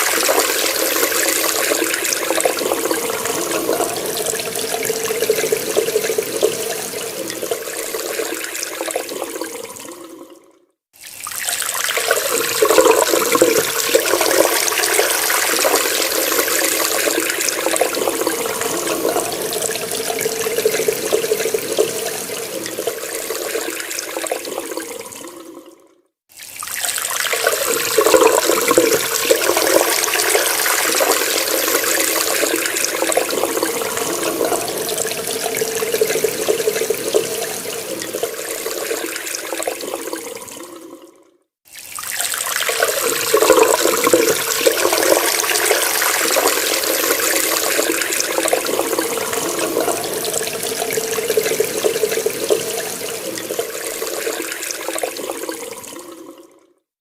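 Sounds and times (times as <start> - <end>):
water running from tap: 0.0 - 10.3, 11.0 - 25.6, 26.3 - 41.0, 41.7 - 56.5.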